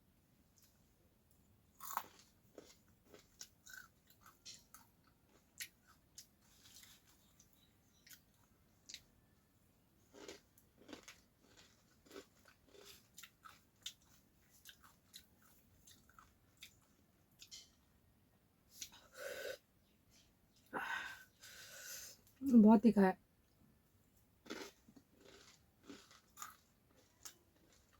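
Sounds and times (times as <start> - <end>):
person chewing crunchy snack: 1.8 - 9.1, 10.0 - 17.8, 24.4 - 27.9.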